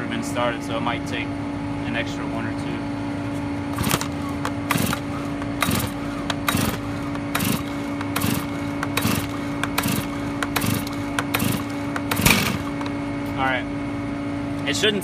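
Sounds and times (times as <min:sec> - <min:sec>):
chainsaw starter cord pulls: 0:03.8 - 0:12.9.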